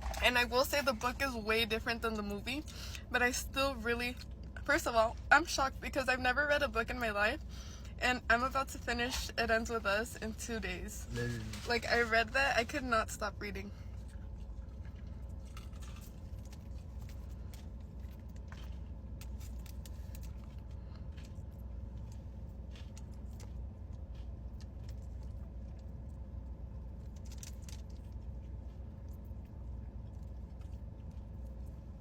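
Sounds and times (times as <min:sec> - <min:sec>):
steady low hum: 0:00.0 - 0:32.0
person chewing food: 0:13.9 - 0:32.0.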